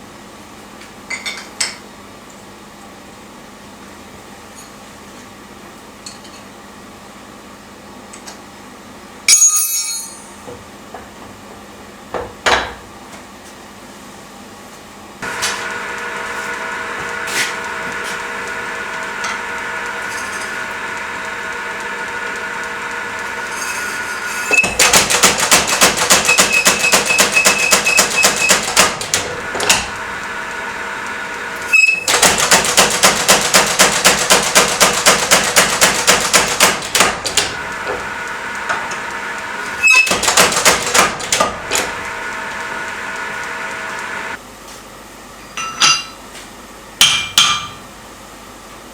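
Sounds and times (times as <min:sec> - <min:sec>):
power hammer motor humming: 0:15.2 - 0:44.4
rapid hammer blows on steel: 0:15.2 - 0:44.4.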